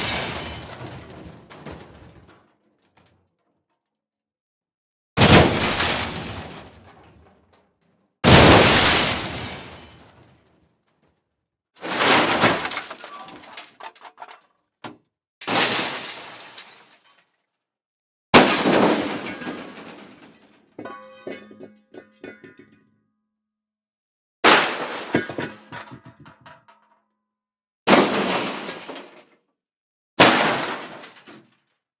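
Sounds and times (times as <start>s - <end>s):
car crash metal and glass smash: 0.0s - 3.2s, 5.2s - 7.4s, 8.3s - 10.3s, 11.8s - 14.4s, 15.5s - 17.2s, 18.4s - 21.6s, 27.9s - 29.3s, 30.2s - 31.4s
debris scattering: 0.0s - 3.2s, 5.2s - 7.5s, 8.3s - 10.3s, 11.8s - 17.2s, 18.4s - 22.6s, 24.5s - 26.8s
debris clinking and ringing: 12.1s - 14.4s, 20.8s - 22.7s.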